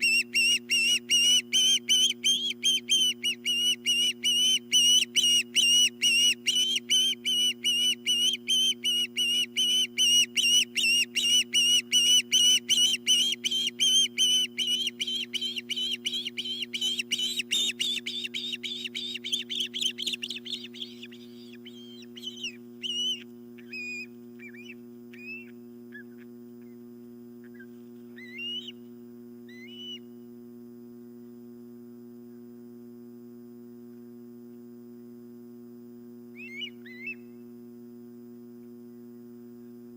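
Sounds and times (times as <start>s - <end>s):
steady low hum: 0.0s - 39.9s
short bird chirps: 27.4s - 28.8s.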